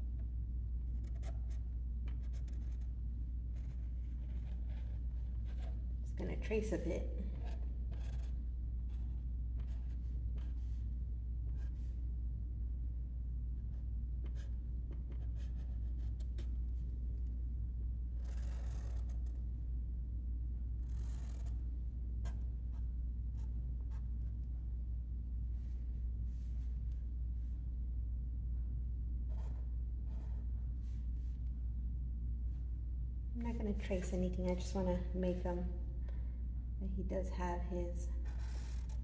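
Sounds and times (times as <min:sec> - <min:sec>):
low hum: 0:00.0 - 0:39.0
marker scratching on paper: 0:01.0 - 0:02.9, 0:03.5 - 0:05.8, 0:06.6 - 0:10.8, 0:14.2 - 0:16.5, 0:18.2 - 0:19.4, 0:20.8 - 0:21.6, 0:29.3 - 0:31.0, 0:38.2 - 0:39.0.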